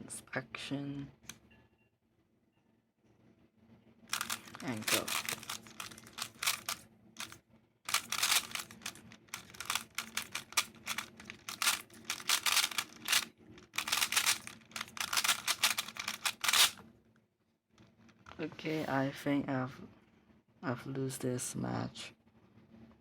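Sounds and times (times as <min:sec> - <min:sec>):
speed cube plastic clicking: 0:04.1 - 0:16.8.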